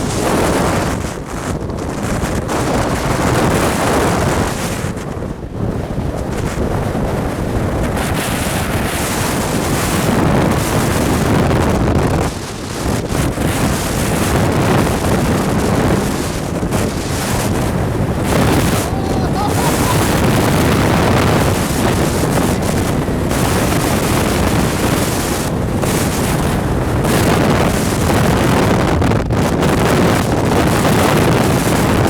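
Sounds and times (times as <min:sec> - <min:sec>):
wind buffeting microphone: 0:13.0 - 0:32.0.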